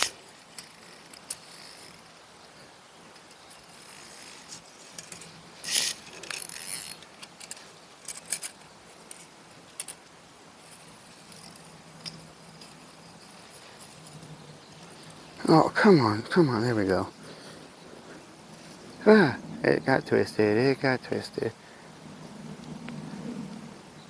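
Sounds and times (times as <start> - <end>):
fishing tackle rustling and rattling: 0.0 - 2.5, 3.1 - 15.4.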